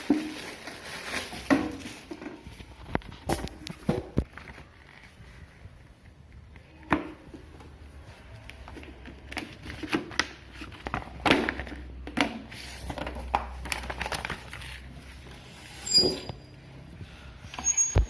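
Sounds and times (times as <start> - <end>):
crinkling: 0.0 - 6.7.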